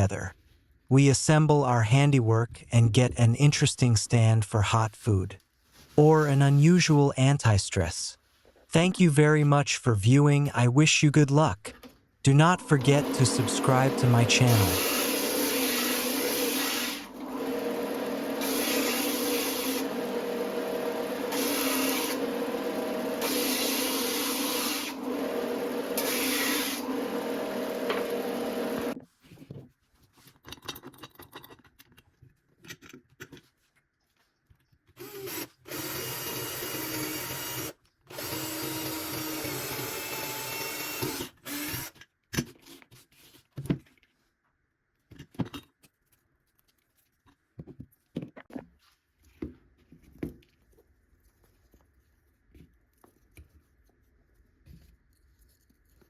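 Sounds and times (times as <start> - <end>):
electric power tool on wood: 12.6 - 29.0, 35.0 - 41.9.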